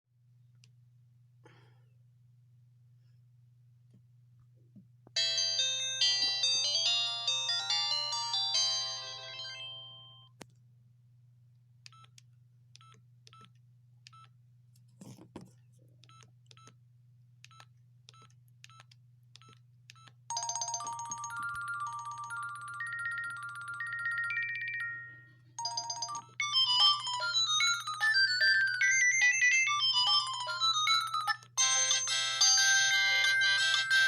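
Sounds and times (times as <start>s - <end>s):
phone ringtone melodies: 5.2s - 10.3s, 20.3s - 34.0s.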